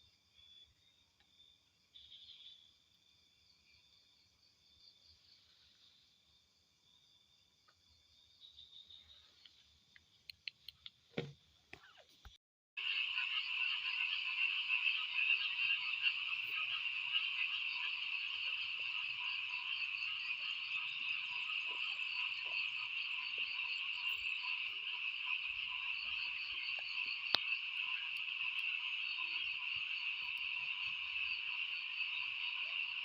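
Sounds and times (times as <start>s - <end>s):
insects chirping: 0.0s - 11.1s, 12.8s - 33.0s
frogs croaking: 12.8s - 33.0s.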